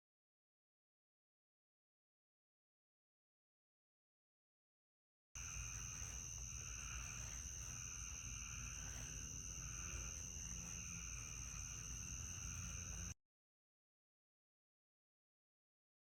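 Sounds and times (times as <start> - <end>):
wavering insect trills: 5.4 - 13.1
insect chorus drone: 5.4 - 13.2.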